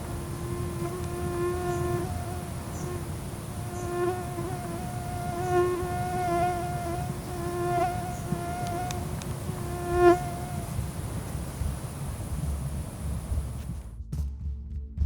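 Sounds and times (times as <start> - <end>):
flying insect buzzing: 0.0 - 13.8
low rumble: 9.0 - 14.1.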